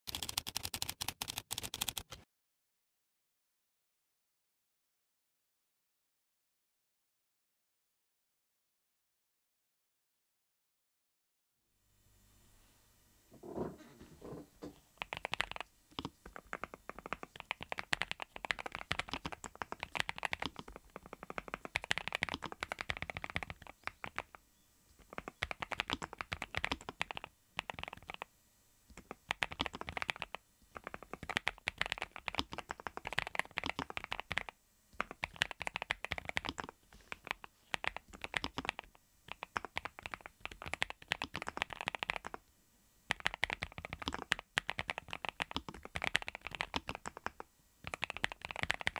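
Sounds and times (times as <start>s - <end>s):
mechanical keyboard typing: 0.1s - 2.2s, 15.0s - 24.4s, 25.0s - 28.3s, 28.9s - 42.4s, 43.1s - 48.9s.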